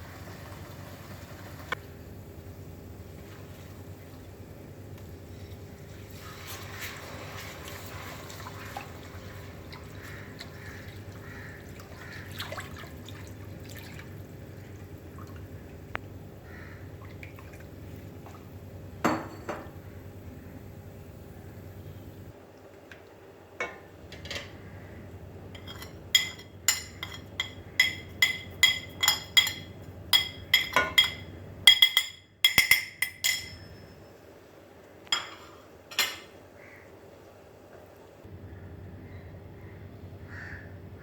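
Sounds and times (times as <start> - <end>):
liquid bubbling in a pan: 0.0 - 15.9
steady low hum: 23.1 - 41.0
utensil clinking against pan: 25.6 - 33.8.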